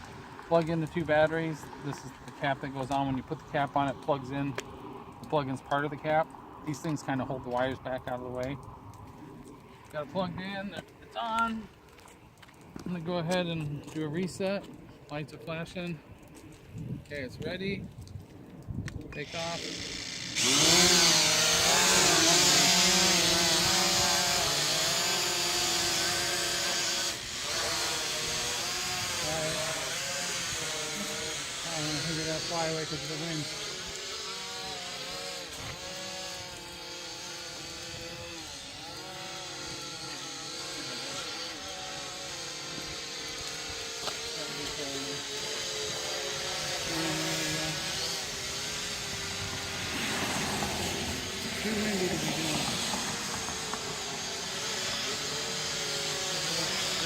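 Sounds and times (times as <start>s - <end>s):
drone propellers buzzing: 19.1s - 57.0s.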